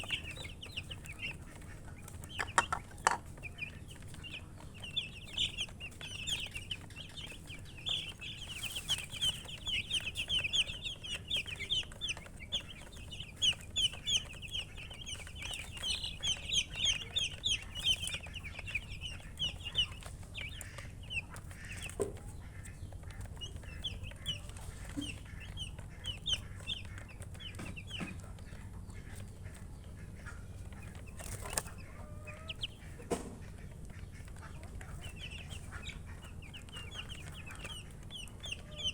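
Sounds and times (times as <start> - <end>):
baby chicks peeping: 0.0 - 38.9
sharp knocks: 2.4 - 3.2, 33.0 - 33.5.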